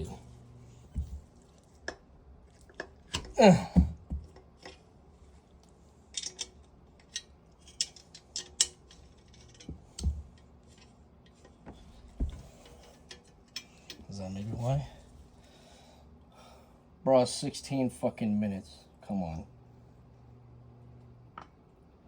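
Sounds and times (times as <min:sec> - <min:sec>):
fan parts clicking and tapping: 0:00.8 - 0:15.5.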